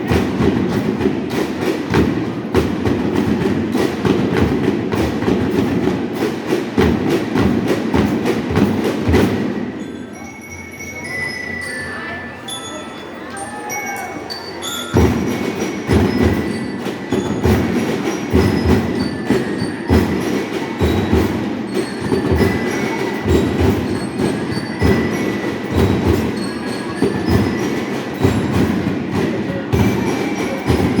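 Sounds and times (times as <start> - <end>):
marching band drum beat: 0.0 - 9.8, 15.0 - 31.0
high bell-lyre notes: 9.4 - 31.0.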